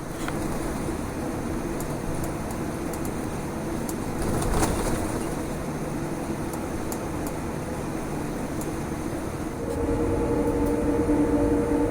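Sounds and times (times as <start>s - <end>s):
aircraft cabin engine rumble: 5.2s - 11.9s.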